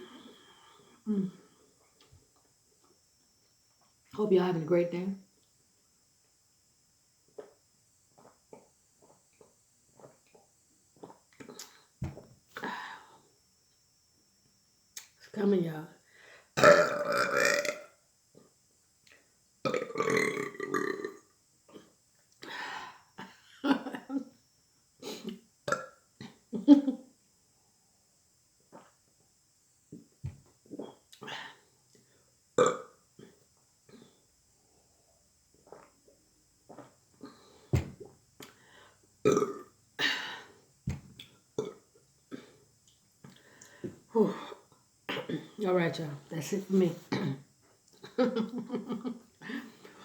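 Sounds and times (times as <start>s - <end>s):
woman burping: 16.6s - 17.9s, 19.7s - 21.8s, 25.1s - 26.4s, 39.3s - 40.2s, 47.1s - 47.5s.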